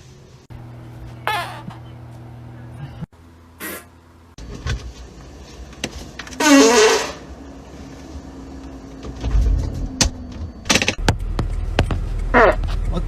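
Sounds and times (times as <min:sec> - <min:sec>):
steady low hum: 0:00.0 - 0:06.3
squeaky fart: 0:01.2 - 0:01.9, 0:06.4 - 0:07.2.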